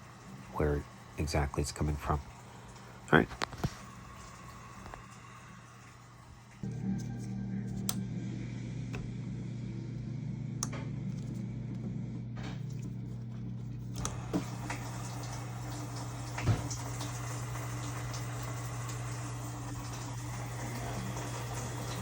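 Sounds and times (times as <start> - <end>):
steady low hum: 0.0 - 22.0
water hissing through inlet valve: 14.0 - 22.0.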